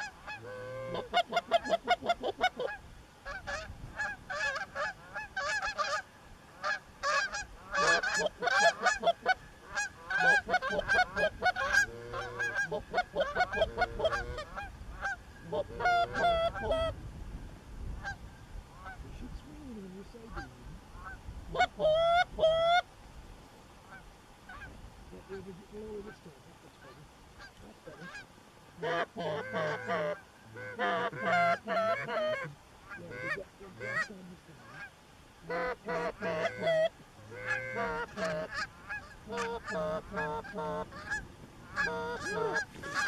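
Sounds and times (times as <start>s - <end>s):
geese honking: 0.0s - 17.0s, 18.0s - 19.0s, 19.7s - 22.9s, 23.8s - 43.0s.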